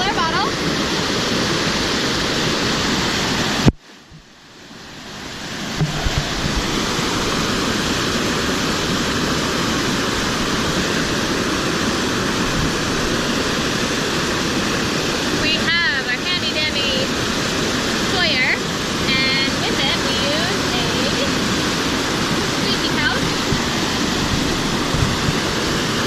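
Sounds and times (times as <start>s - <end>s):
waterfall rushing: 0.0s - 26.0s.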